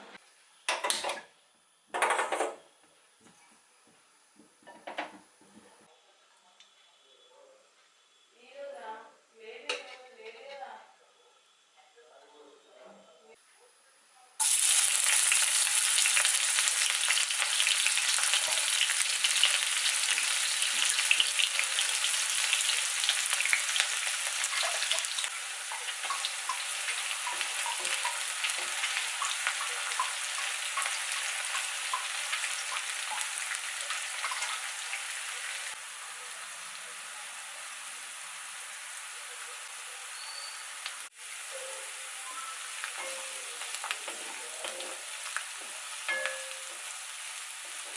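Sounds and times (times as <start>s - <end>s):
chicken sizzling in hot oil: 14.4s - 47.9s.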